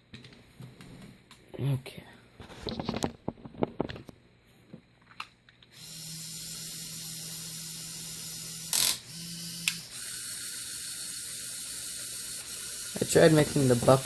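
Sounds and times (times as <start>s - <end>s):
electric motors whirring: 5.8s - 14.0s.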